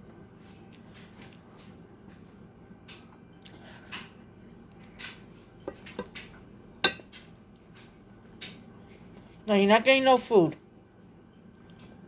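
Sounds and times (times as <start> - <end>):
wet chewing and mouth smacks: 2.8 - 5.3.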